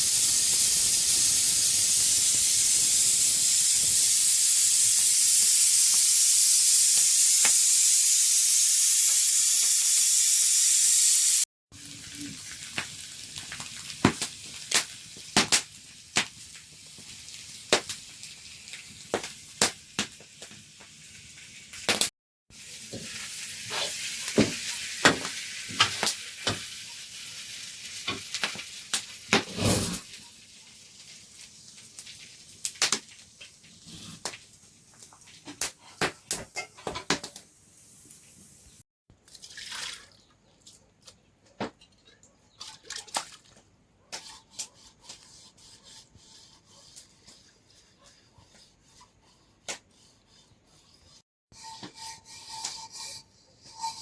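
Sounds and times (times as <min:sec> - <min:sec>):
food sizzling in hot oil: 0:00.0 - 0:38.8, 0:51.6 - 0:54.0.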